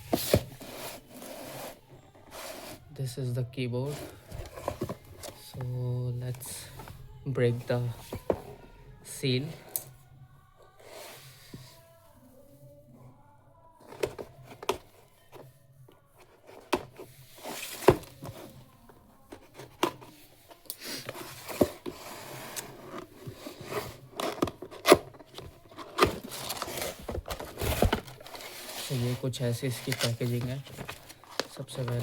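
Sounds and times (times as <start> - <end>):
packaging tearing and rustling: 23.6 - 32.0.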